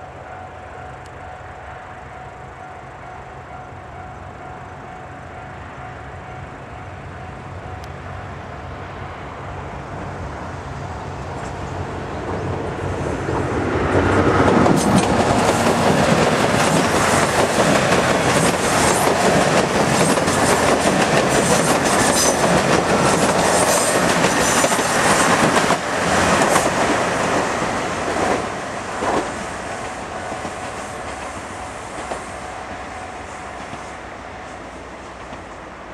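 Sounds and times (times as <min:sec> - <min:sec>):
diesel train passing: 0:00.0 - 0:35.9
wheels clacking over rail joints: 0:13.2 - 0:32.8.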